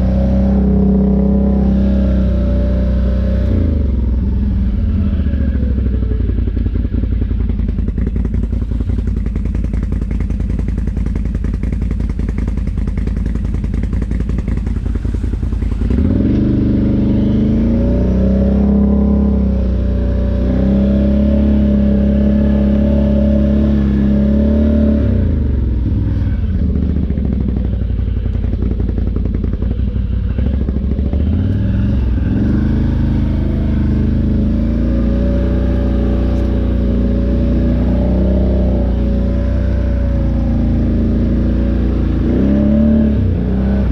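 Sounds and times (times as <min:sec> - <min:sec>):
atv engine revving: 0:00.0 - 0:43.9.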